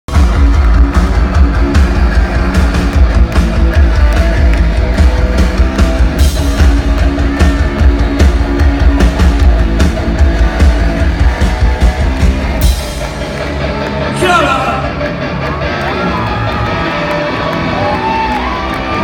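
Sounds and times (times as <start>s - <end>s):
drum kit beat: 0.1s - 14.8s
distorted electric guitar: 0.1s - 19.0s
heavy bass guitar: 0.1s - 19.0s.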